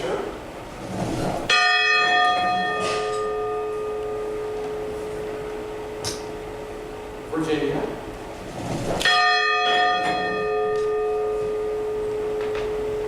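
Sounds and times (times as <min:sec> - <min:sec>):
church bell strike: 0:01.5 - 0:06.6, 0:09.0 - 0:13.0.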